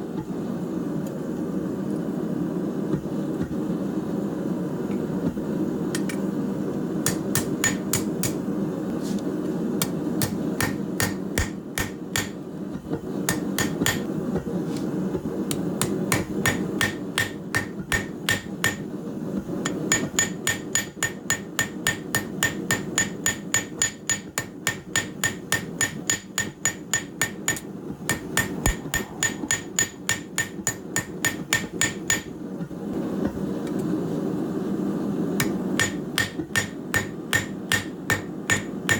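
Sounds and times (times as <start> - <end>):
steady low hum: 0.0 - 38.9
hammer striking steel on anvil: 7.0 - 8.4, 9.8 - 12.4, 13.3 - 14.1, 15.8 - 18.9, 19.7 - 32.4, 35.4 - 38.9.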